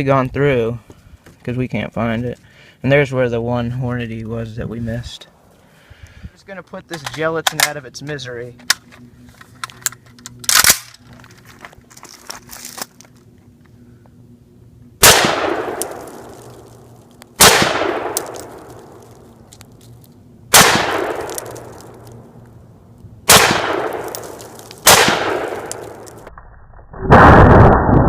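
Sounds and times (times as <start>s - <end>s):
gunshots echoing: 15.0s - 16.4s, 17.4s - 19.0s, 20.5s - 21.8s, 23.3s - 26.1s.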